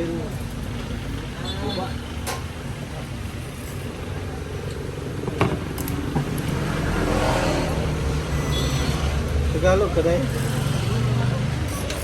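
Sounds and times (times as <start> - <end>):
vehicle engine and road rumble: 0.0 - 12.0.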